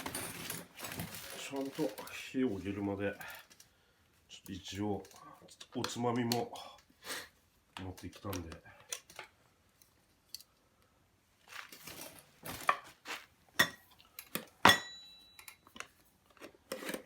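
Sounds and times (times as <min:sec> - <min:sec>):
ringing metal clink: 0:14.6 - 0:15.6
knocks and clinks: 0:14.6 - 0:15.8.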